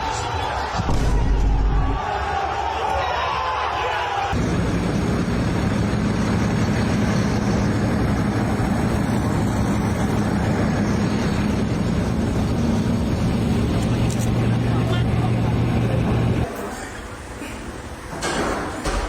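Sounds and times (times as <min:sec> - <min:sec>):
engine running steadily: 0:04.3 - 0:19.0.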